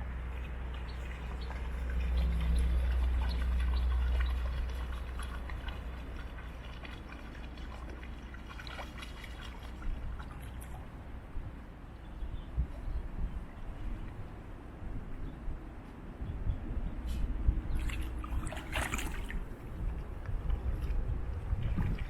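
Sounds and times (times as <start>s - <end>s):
water trickling and splashing: 0.0s - 11.4s, 17.6s - 22.0s.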